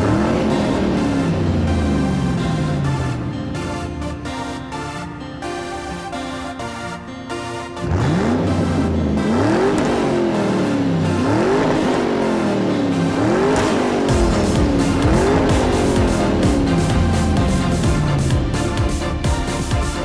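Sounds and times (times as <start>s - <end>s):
car engine revving: 0.0s - 5.2s, 7.8s - 20.0s
music playing: 0.0s - 20.0s.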